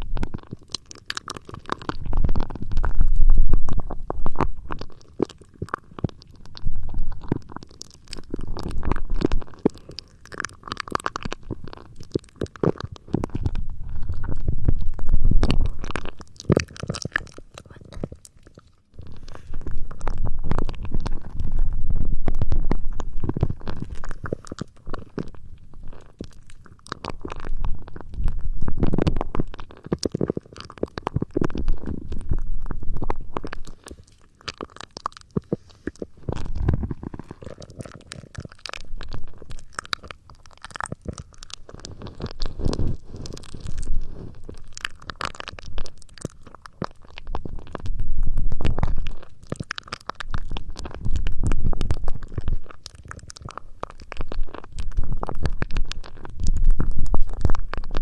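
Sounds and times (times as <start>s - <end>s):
small crackles and clicks: 0.0s - 58.0s
muffled rubbing and scratching: 41.4s - 44.7s.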